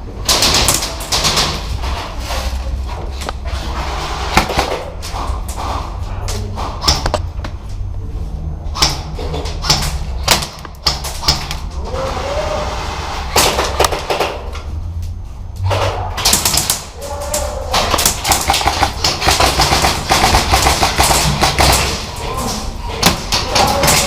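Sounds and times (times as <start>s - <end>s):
airsoft guns firing full-auto: 16.2s - 16.9s, 17.8s - 22.0s.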